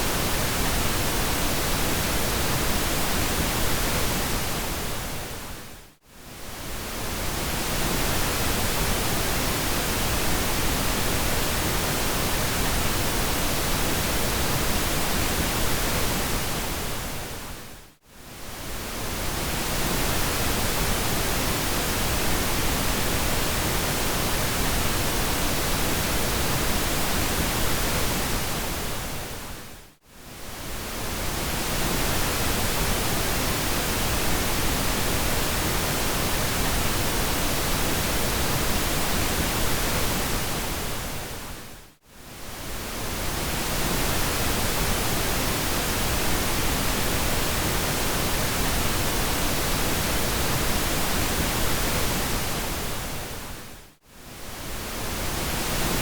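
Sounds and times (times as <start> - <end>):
pink noise hiss: 18.3 - 56.0.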